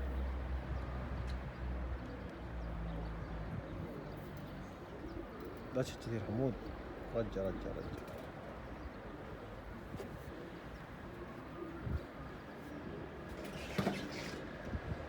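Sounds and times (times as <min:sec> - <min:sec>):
pigeons cooing: 0:03.6 - 0:15.0.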